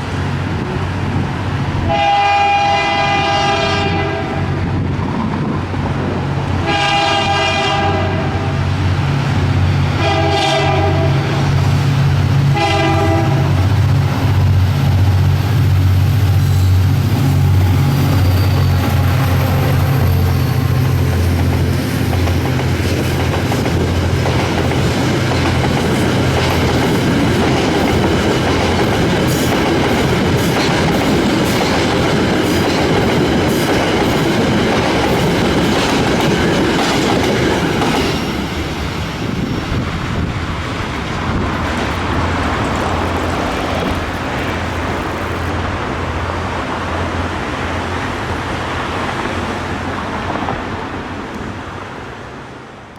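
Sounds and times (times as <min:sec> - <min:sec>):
freight train wagons rolling: 0:10.8 - 0:45.9
wheels clacking over rail joints: 0:16.8 - 0:45.6.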